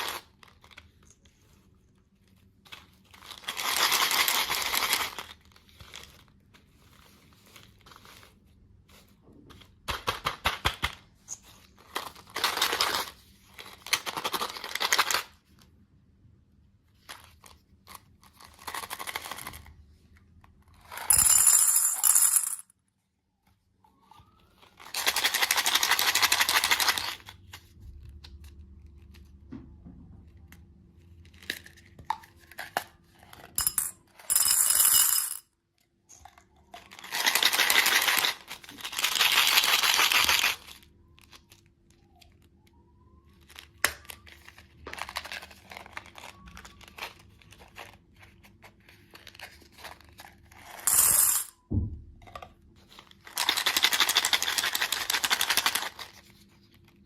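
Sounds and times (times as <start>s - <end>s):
candy packaging rustling and tearing: 0.0s - 15.7s, 16.8s - 20.9s, 36.7s - 50.8s, 52.8s - 57.0s
candies clicking and clinking: 53.0s - 56.2s.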